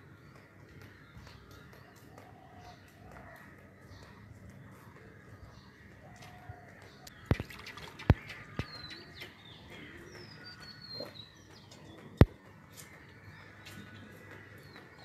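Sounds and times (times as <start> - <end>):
birds chirping: 0.0 - 15.0
sharp clicks: 7.0 - 9.3.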